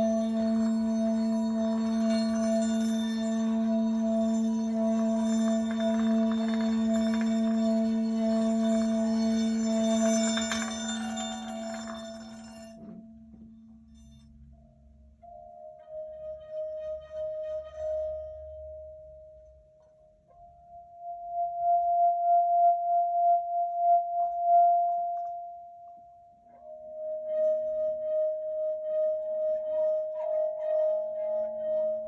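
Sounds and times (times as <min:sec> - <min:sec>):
singing bowl ringing: 0:00.0 - 0:13.1.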